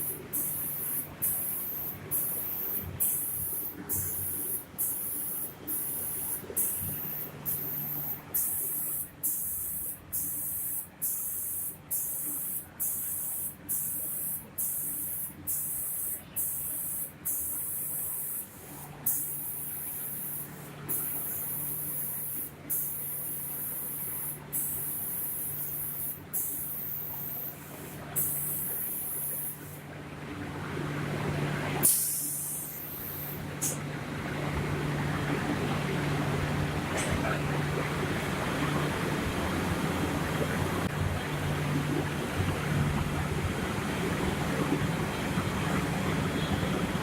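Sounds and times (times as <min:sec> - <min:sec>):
spray guns hissing: 0:00.0 - 0:29.8, 0:31.8 - 0:33.8
low machine hum: 0:32.7 - 0:47.0.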